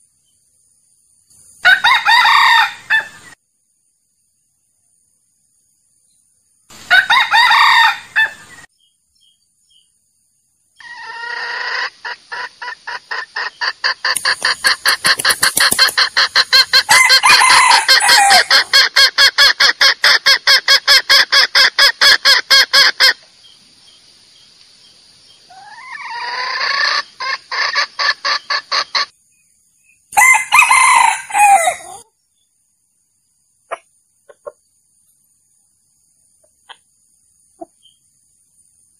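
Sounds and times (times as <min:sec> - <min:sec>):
rooster crowing: 0:01.6 - 0:03.2, 0:06.9 - 0:08.4, 0:16.8 - 0:18.8, 0:30.2 - 0:32.0
sharp clucks: 0:10.9 - 0:17.1, 0:18.0 - 0:23.3, 0:25.6 - 0:29.2, 0:33.7 - 0:35.2, 0:36.4 - 0:37.9.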